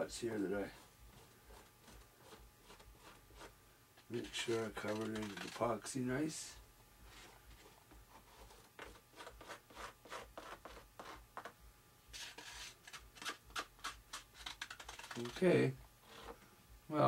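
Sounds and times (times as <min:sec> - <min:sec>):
scraper spreading epoxy: 0:04.2 - 0:05.8, 0:12.1 - 0:16.4.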